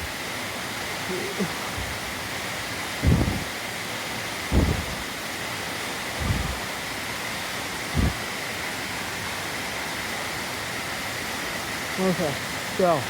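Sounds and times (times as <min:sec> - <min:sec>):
waterfall and stream rushing: 0:00.0 - 0:13.0
breath puffs on microphone: 0:03.0 - 0:03.6, 0:04.5 - 0:05.1, 0:06.2 - 0:06.7, 0:07.9 - 0:08.3.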